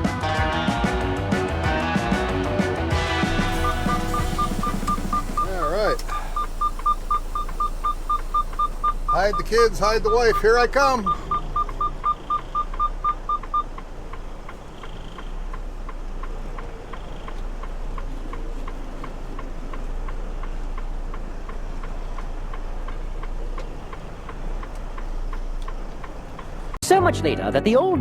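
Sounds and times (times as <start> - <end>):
low engine rumble: 0.0 - 26.8
rapid ticking: 0.0 - 26.8
short high beeps: 3.3 - 13.7.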